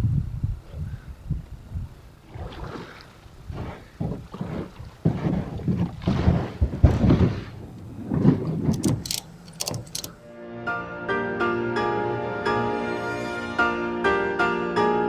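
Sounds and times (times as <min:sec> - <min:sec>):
water swishing against hull: 0:01.5 - 0:10.2
kayak thudding and scraping: 0:02.2 - 0:10.2
sharp clicks: 0:07.7 - 0:10.2.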